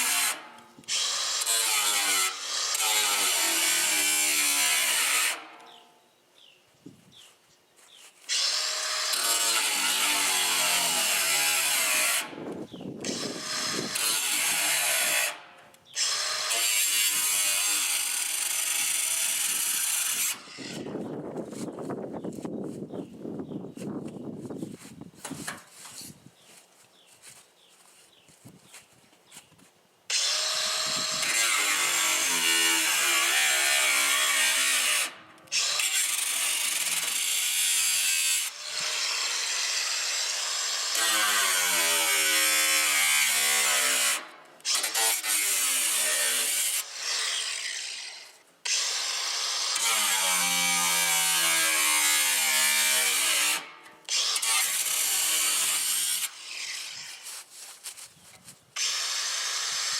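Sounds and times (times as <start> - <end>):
angle grinder cutting metal: 0.0 - 5.8, 8.3 - 12.4, 13.0 - 20.9, 30.1 - 57.3, 58.8 - 59.9.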